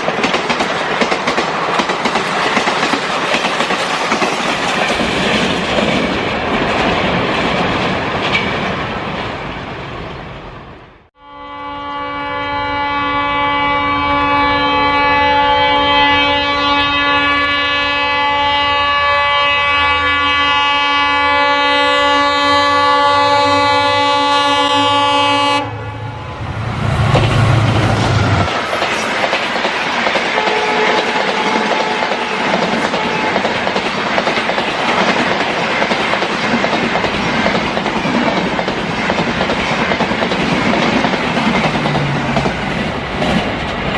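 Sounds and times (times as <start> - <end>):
train wheels clattering: 0.0 - 9.4, 27.0 - 43.9
locomotive horn honking: 11.2 - 28.5, 30.4 - 33.4
locomotive rumbling: 23.5 - 43.9.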